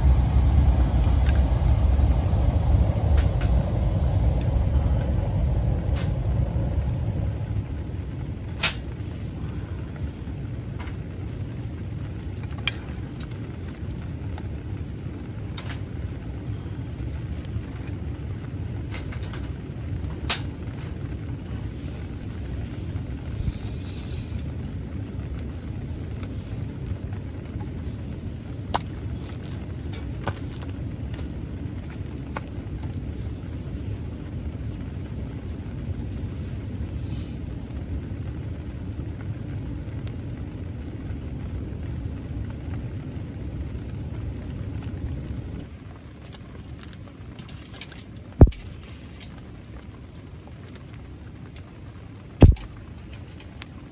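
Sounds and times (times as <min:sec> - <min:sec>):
rain drumming on a tarp: 0:00.0 - 0:53.9.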